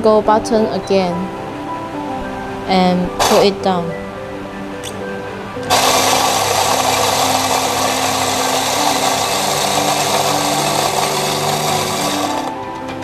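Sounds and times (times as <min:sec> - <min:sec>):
electric coffee grinder grinding: 0:05.7 - 0:13.0.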